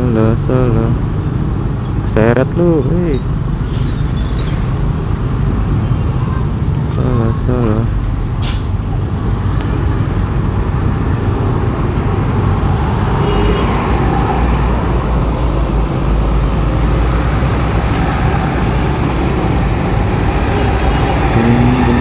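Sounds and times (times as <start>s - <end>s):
road and traffic rumble: 0.0s - 22.0s.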